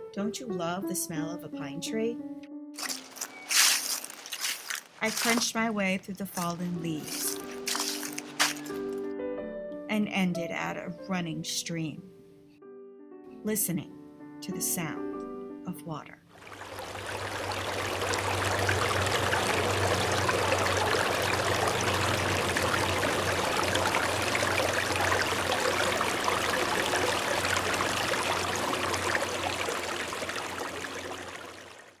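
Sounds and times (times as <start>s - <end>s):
stream water rushing: 2.8s - 5.4s, 7.0s - 8.8s, 16.4s - 32.0s.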